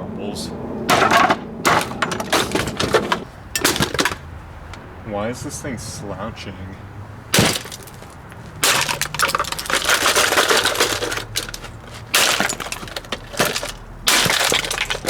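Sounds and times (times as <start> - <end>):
plastic and metal crackling: 0.9 - 4.8, 7.3 - 15.0.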